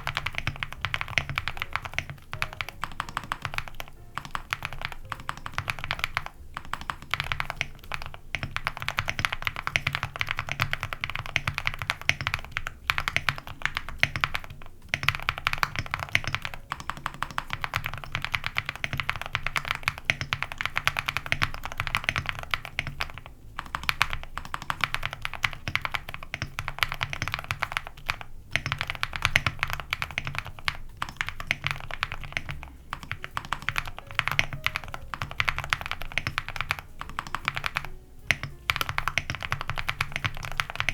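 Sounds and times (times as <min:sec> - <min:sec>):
mechanical keyboard typing: 0:00.0 - 0:40.9.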